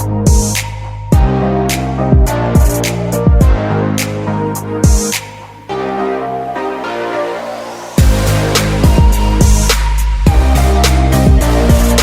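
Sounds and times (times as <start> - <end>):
deep kick drums: 0.3 - 1.4, 2.1 - 3.7, 8.0 - 12.0.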